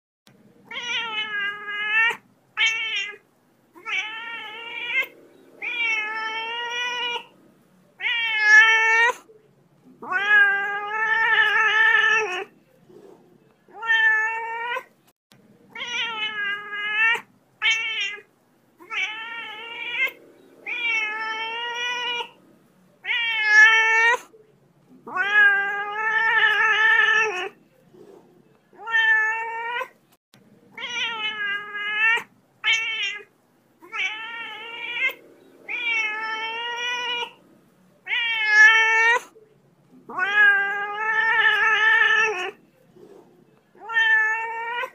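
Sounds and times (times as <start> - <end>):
cat meowing: 0.7 - 3.2, 3.8 - 7.3, 8.0 - 9.3, 10.0 - 12.5, 13.7 - 14.9, 15.7 - 22.4, 23.0 - 24.3, 25.0 - 27.6, 28.7 - 30.0, 30.8 - 37.4, 38.0 - 39.4, 40.0 - 42.6, 43.8 - 44.9.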